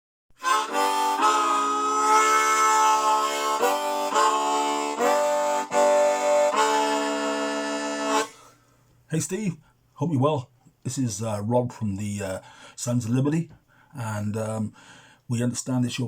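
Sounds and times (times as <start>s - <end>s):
reed instrument playing chords: 0.4s - 8.4s.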